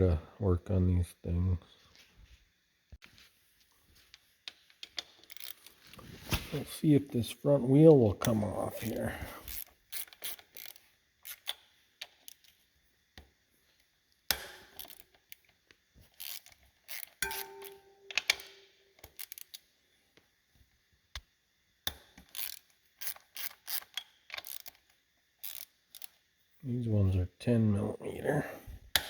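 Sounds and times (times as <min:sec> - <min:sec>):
metal tool clicks and knocks: 0:17.2 - 0:19.2.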